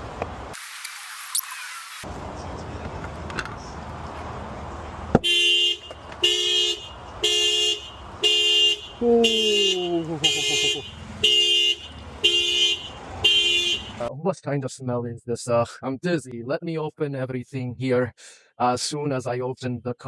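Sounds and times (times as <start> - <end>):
car horn honking in pulses: 5.2 - 14.1.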